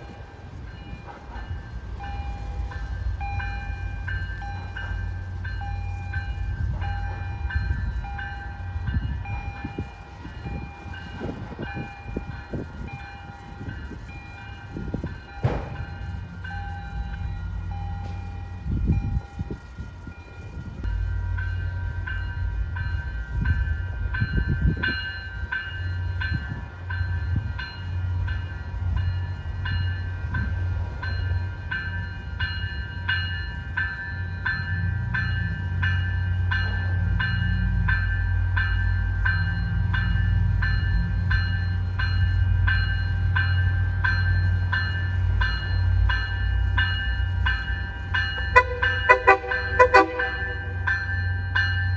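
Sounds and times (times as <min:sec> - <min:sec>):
train rumbling past: 0:00.0 - 0:51.9
bell ringing: 0:31.0 - 0:51.9.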